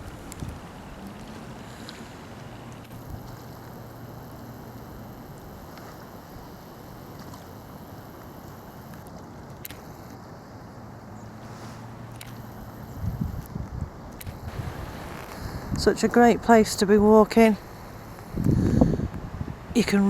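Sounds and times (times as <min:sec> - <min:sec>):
wind on microphone: 0:00.0 - 0:03.5, 0:12.6 - 0:20.0.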